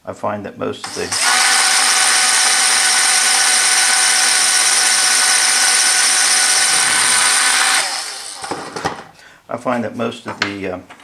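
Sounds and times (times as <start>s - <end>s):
electric drill drilling wood: 0.8s - 9.1s.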